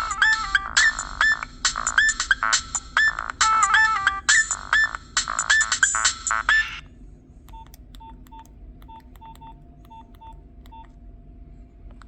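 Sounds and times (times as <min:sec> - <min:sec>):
phone keypad beeps: 0:00.0 - 0:02.4, 0:07.5 - 0:10.9
phone ringtone: 0:00.0 - 0:06.8.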